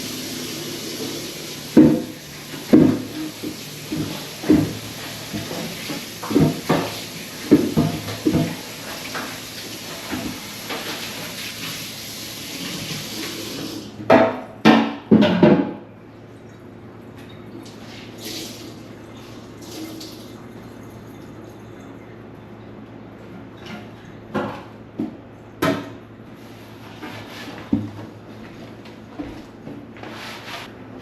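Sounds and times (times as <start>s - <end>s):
water running from a tap: 0.0s - 13.9s, 17.7s - 20.5s.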